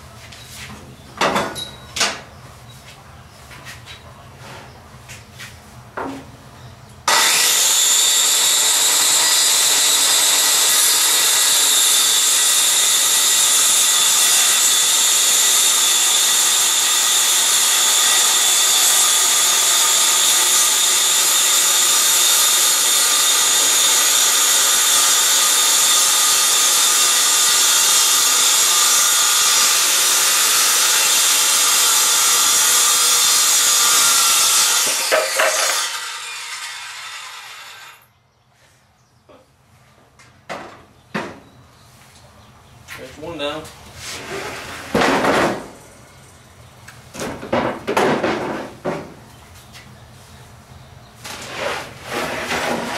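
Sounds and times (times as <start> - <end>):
power saw whining: 7.1 - 38.1.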